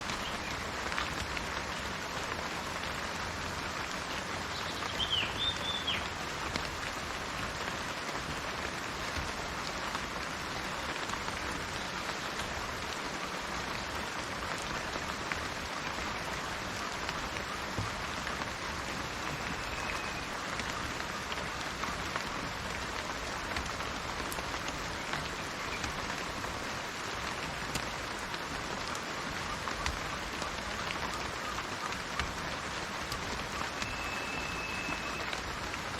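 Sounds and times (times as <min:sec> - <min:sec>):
rain falling: 0:00.0 - 0:35.9
bird chirping: 0:33.8 - 0:35.2.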